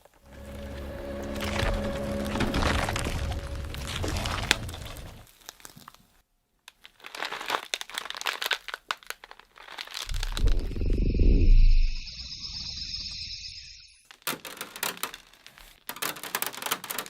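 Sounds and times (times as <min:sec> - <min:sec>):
sharp crinkling and crackling: 0:00.0 - 0:10.6
low rumble: 0:00.2 - 0:05.2, 0:10.1 - 0:13.9.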